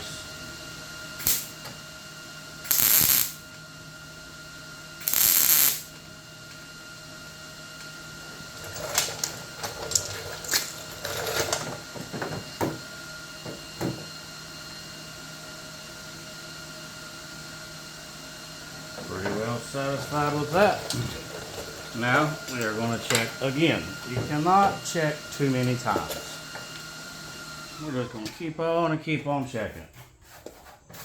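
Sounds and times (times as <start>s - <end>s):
crackling tack welds: 1.2s - 1.7s, 2.6s - 3.5s, 5.0s - 6.0s, 19.1s - 21.2s.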